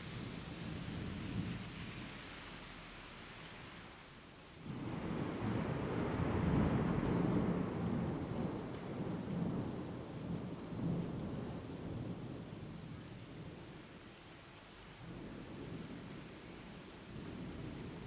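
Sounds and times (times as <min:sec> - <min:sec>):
rain falling: 0:00.0 - 0:18.0.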